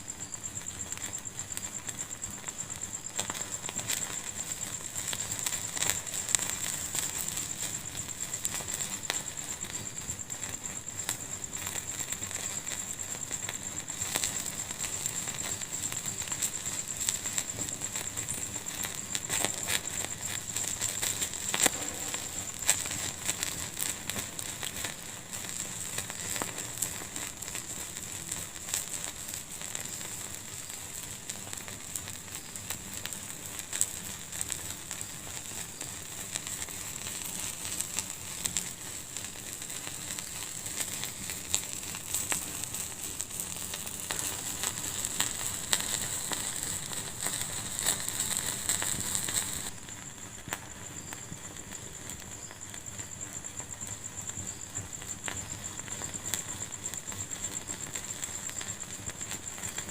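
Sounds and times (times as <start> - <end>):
loud fire pops: 0.0 - 59.9
wood fire crackling: 0.0 - 59.9.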